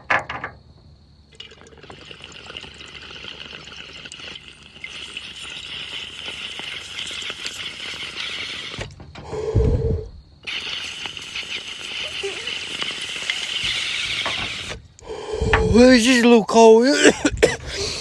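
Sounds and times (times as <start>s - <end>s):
liquid flowing with hiss: 1.4s - 8.9s, 10.4s - 16.4s
sudden low thump: 15.4s - 15.8s, 17.2s - 17.7s.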